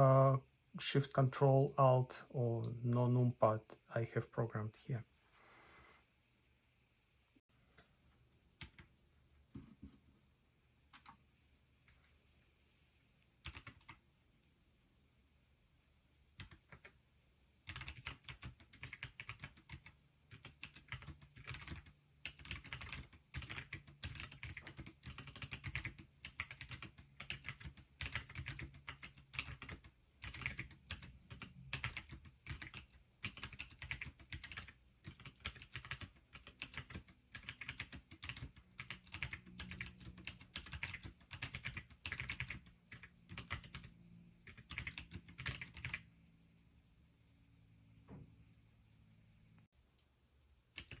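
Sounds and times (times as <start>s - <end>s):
mechanical keyboard typing: 8.6s - 8.9s, 13.4s - 14.0s, 16.4s - 17.0s, 17.6s - 46.0s, 50.8s - 51.0s.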